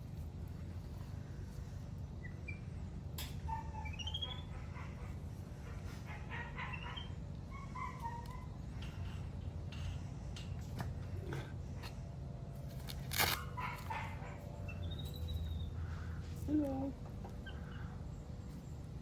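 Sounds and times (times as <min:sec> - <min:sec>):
small animal chirps and squeaks: 0:02.2 - 0:04.6, 0:14.6 - 0:18.0.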